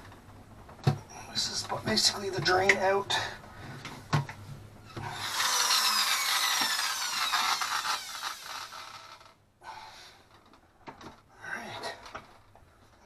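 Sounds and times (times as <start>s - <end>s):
power tool whining: 5.0s - 9.3s.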